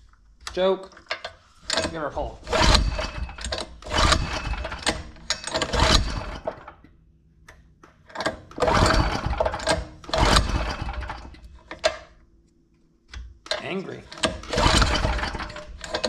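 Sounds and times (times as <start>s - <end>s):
recoil starter pulls: 0.0s - 6.9s, 7.5s - 12.2s, 13.1s - 16.0s
engine cranking: 0.9s - 6.8s, 8.1s - 12.2s, 13.5s - 16.0s.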